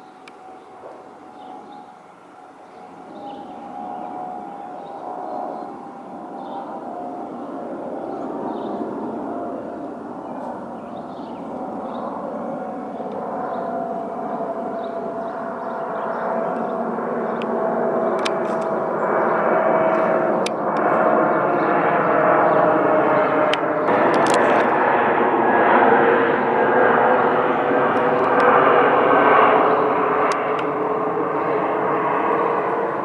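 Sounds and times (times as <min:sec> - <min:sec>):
jet engines whining: 0:00.0 - 0:33.0
sharp clicks: 0:18.1 - 0:18.8, 0:23.5 - 0:24.7.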